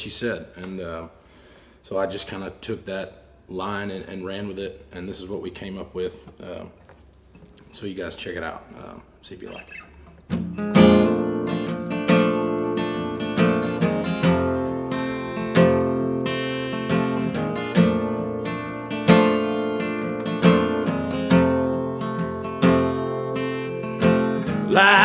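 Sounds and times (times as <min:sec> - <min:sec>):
acoustic guitar strumming: 0:09.5 - 0:25.0.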